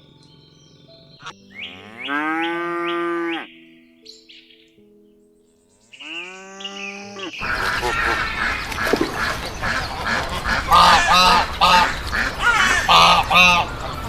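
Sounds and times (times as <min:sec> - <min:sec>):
geese honking: 0:01.2 - 0:03.5, 0:06.0 - 0:14.0
drawn-out animal call: 0:09.5 - 0:14.0.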